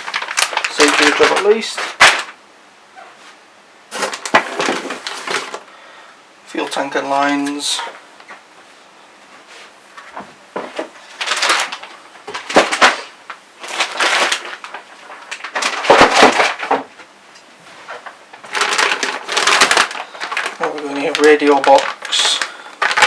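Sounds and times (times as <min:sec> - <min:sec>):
plastic bags crinkling: 0:00.0 - 0:02.4, 0:03.9 - 0:05.7, 0:10.0 - 0:17.1, 0:17.7 - 0:23.0.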